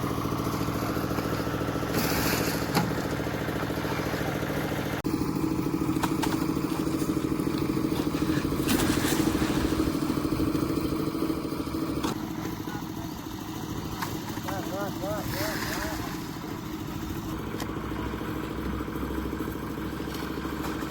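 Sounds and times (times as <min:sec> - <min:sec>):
concrete mixer engine running: 0:00.0 - 0:20.9.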